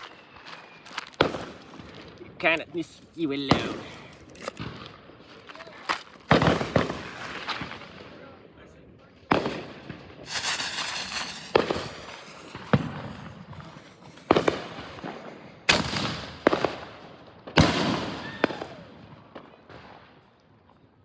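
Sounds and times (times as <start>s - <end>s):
hissing crackle: 10.2s - 16.3s
firework shells bursting: 10.2s - 16.8s.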